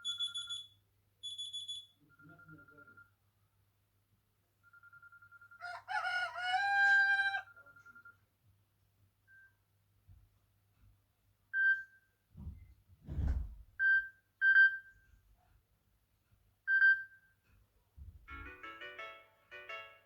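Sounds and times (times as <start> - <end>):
short high beeps: 0.0 - 0.7.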